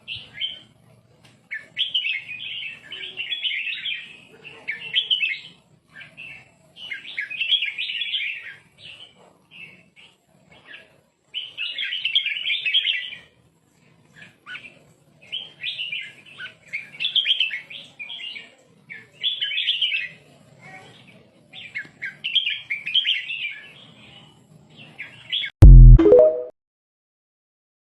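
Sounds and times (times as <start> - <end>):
bird singing chirping phrases: 1.5 - 9.8.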